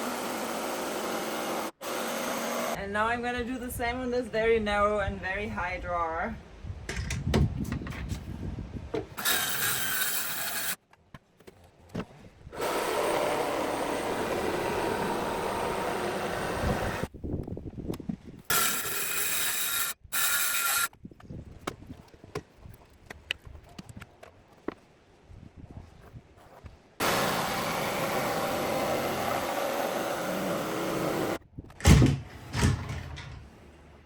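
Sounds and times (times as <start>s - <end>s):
circular saw cutting wood: 0.0s - 2.8s, 9.2s - 10.8s, 12.6s - 17.1s, 18.5s - 20.9s, 27.0s - 31.4s.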